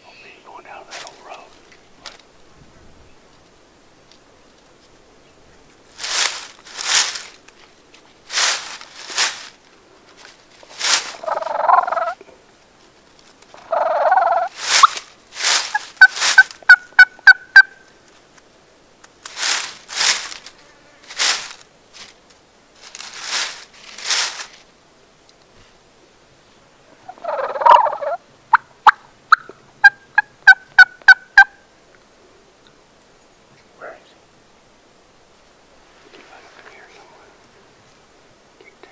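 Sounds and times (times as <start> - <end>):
sharp short turkey calls: 11.1 - 12.2, 13.6 - 15.0, 15.6 - 17.9, 27.1 - 31.6
turkey gobbling: 11.1 - 12.2, 13.6 - 15.0, 15.7 - 17.8, 27.1 - 31.6
scratchy noise bursts: 14.2 - 16.7.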